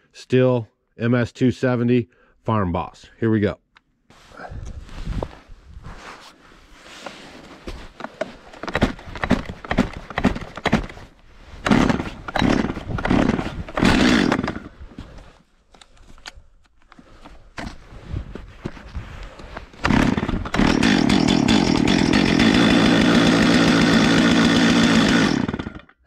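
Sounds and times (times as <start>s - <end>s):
chainsaw engine turning over: 8.0s - 14.8s, 19.7s - 26.0s
recoil starter cord yanks: 8.0s - 14.8s, 19.6s - 26.0s.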